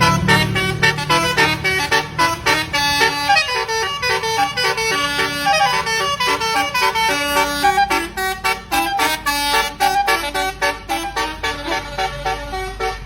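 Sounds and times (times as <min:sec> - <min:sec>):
bus horn playing a melody: 0:00.0 - 0:13.0.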